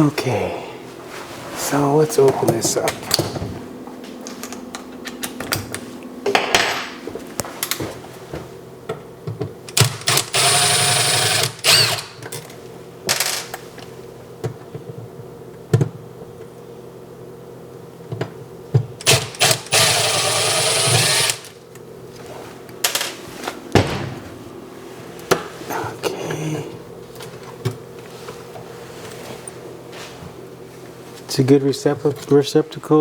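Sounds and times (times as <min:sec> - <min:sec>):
cordless screwdriver running: 0:09.8 - 0:12.2, 0:19.0 - 0:21.5.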